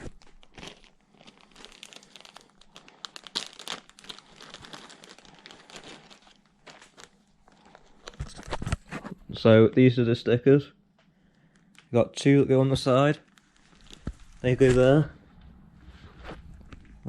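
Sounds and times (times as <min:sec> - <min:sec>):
packaging crinkling: 0:00.0 - 0:09.0, 0:13.2 - 0:15.2.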